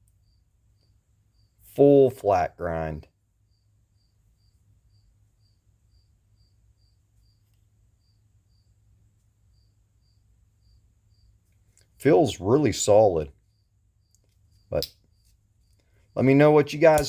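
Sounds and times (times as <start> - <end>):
faint cricket chirping: 0.0 - 1.7, 3.1 - 17.0.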